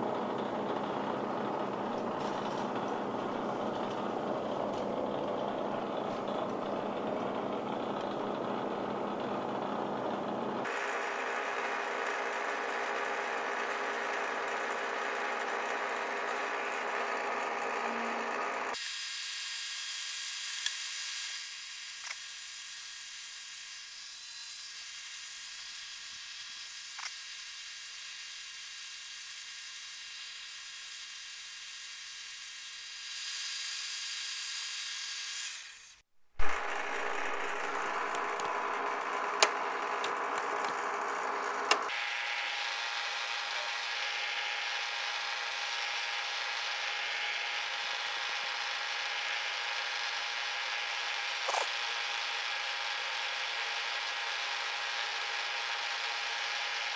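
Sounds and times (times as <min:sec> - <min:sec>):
milling machine drone: 0:00.0 - 0:18.8, 0:36.4 - 0:46.0.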